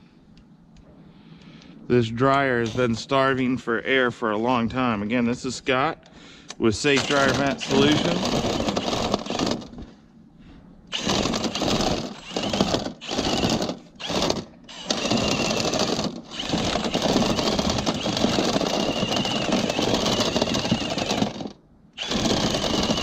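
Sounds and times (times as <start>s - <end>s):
rotary brush rattling in duct: 7.0s - 9.8s, 10.9s - 23.0s.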